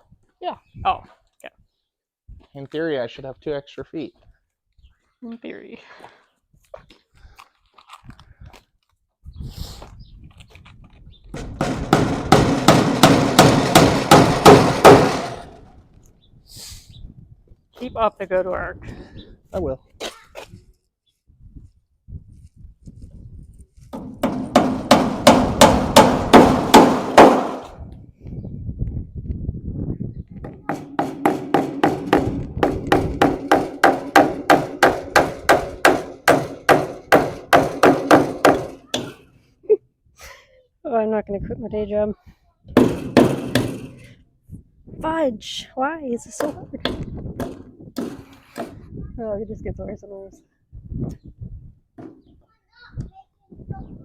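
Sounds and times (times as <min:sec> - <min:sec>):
hammer striking into wood: 0:11.4 - 0:15.6, 0:24.0 - 0:27.8, 0:30.4 - 0:39.2, 0:42.8 - 0:44.0.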